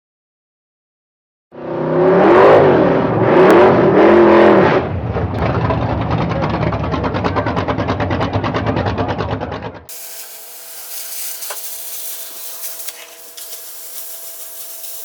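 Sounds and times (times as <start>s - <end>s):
car engine revving and idling: 1.6s - 9.9s.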